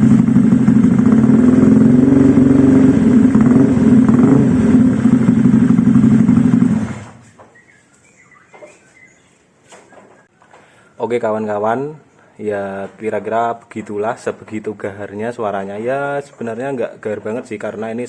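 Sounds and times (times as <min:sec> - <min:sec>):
scooter engine running: 0:00.0 - 0:07.4.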